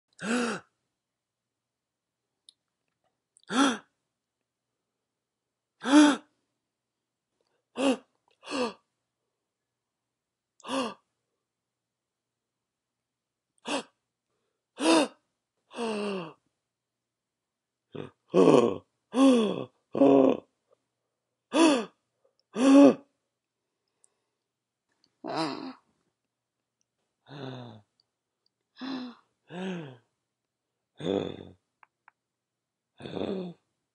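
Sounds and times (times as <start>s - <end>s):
person gasping: 0.1s - 0.8s, 3.4s - 3.9s, 5.8s - 6.3s, 7.7s - 8.9s, 10.6s - 11.1s, 13.6s - 14.0s, 14.8s - 16.4s, 18.0s - 20.4s, 21.5s - 23.1s, 25.2s - 25.9s, 27.2s - 27.9s, 28.8s - 30.1s.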